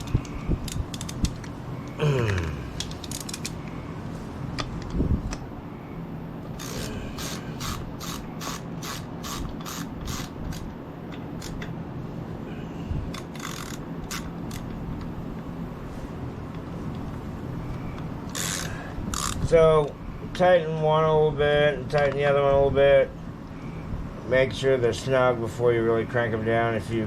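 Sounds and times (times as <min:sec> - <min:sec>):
socket ratchet clicking: 0:00.0 - 0:01.5, 0:02.3 - 0:03.6, 0:06.5 - 0:10.7, 0:13.1 - 0:14.8, 0:18.3 - 0:19.4
fan humming: 0:00.0 - 0:27.0.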